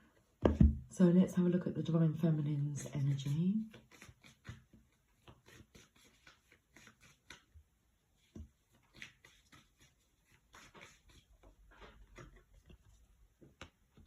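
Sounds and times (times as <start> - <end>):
cards shuffling: 3.2 - 7.5, 8.2 - 14.0.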